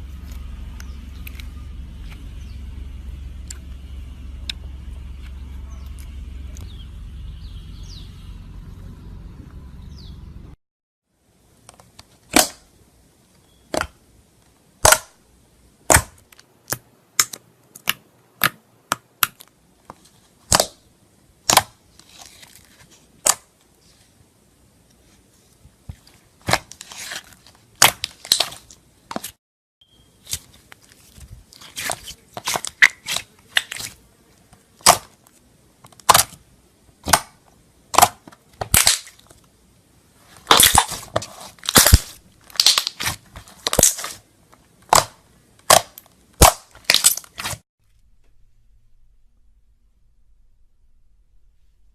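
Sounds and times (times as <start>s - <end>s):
air pockets popping in slime: 36.0s - 36.4s, 37.0s - 39.3s, 40.4s - 44.2s, 44.8s - 47.6s.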